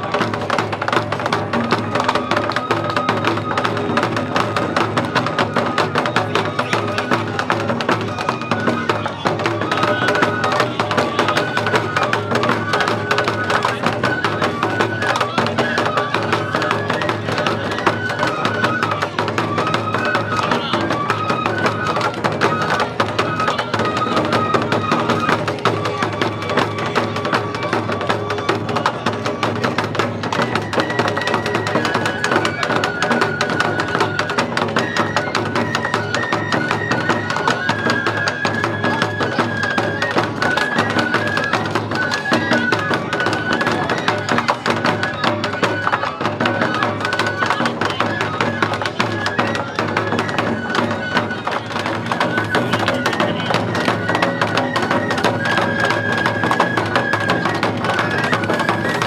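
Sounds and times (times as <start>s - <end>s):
bamboo flute melody: 0.0s - 59.0s
taiko drumming: 0.0s - 59.0s
wooden clacking percussion: 0.0s - 59.0s.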